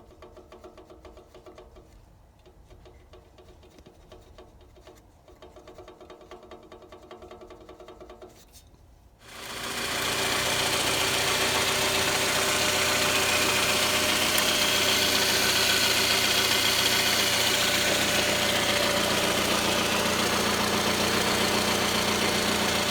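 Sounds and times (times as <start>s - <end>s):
car engine idling: 9.3s - 22.9s.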